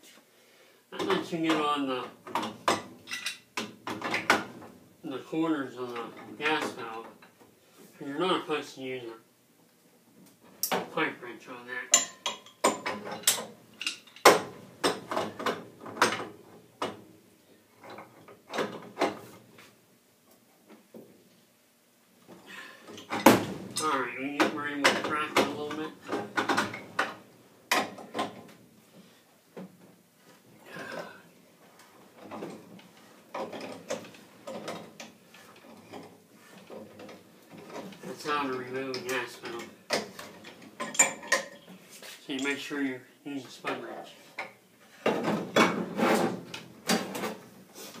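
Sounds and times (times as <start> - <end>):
metal wrenches clanking on pipe: 2.3 - 4.4, 11.9 - 16.3, 32.2 - 42.7.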